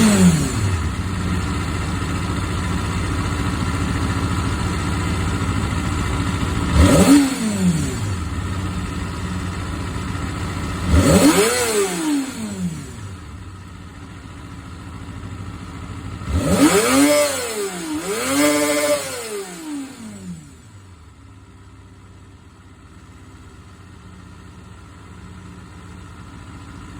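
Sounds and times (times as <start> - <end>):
motorcycle engine idling and revving: 0.0 - 26.9.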